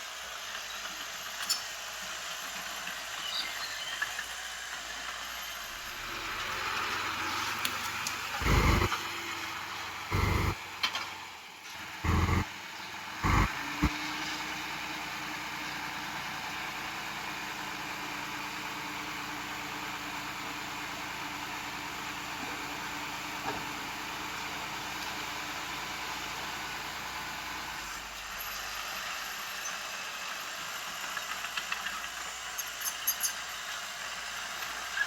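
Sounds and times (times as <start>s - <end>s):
heavy equipment engine running: 8.3s - 9.1s, 9.8s - 10.7s, 12.0s - 13.9s
loud deep engine bursts: 8.4s - 9.0s, 10.1s - 10.6s, 12.0s - 12.5s, 13.2s - 13.9s.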